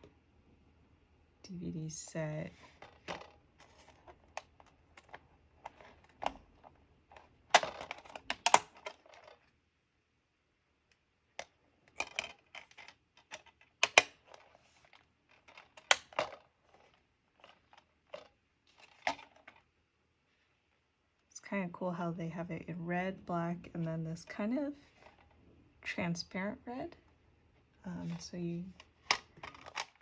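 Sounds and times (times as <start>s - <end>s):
plastic case clicking and rattling: 2.6s - 9.5s, 11.4s - 19.6s, 28.8s - 30.0s.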